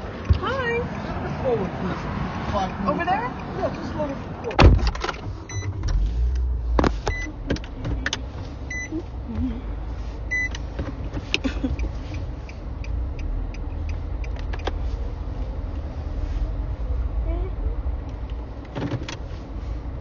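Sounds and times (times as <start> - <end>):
car engine rumble: 0.0 - 20.0
short beeps: 5.5 - 5.7, 7.1 - 7.3, 8.7 - 9.0, 10.3 - 10.6.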